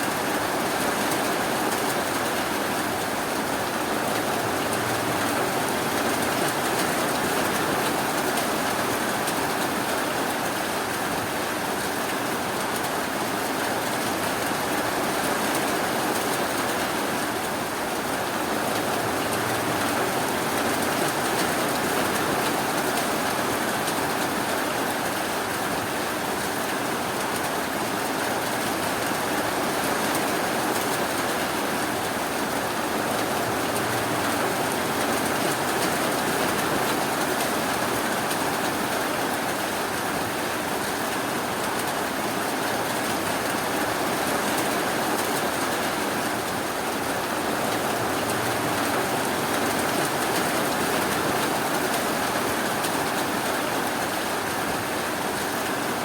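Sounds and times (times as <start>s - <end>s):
steady rainfall: 0.0s - 56.0s.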